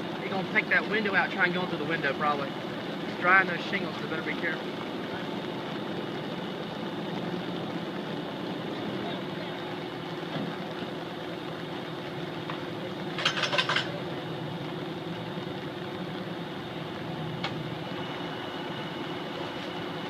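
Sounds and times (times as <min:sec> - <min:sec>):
fire engine motor idling: 0:00.0 - 0:20.0
rapid clatter of clicks: 0:13.2 - 0:13.9.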